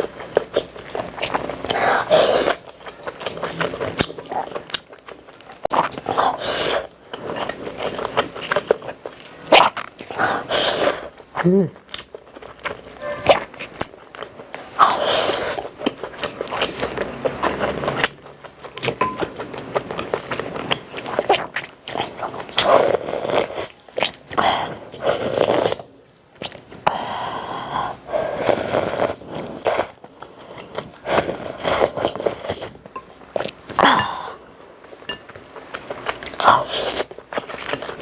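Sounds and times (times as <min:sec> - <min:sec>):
person chewing: 0:00.0 - 0:38.0.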